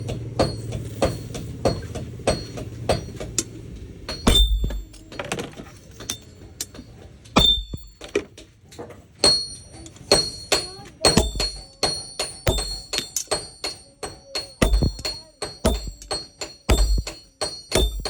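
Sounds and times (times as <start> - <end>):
hammer striking metal on anvil: 0.0 - 3.5, 4.1 - 5.2, 7.4 - 8.0, 9.2 - 18.0.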